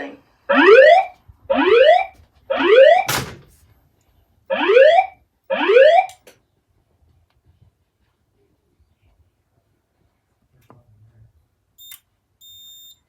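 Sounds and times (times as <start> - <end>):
fire alarm whoop tone: 0.5 - 3.1, 4.5 - 6.2.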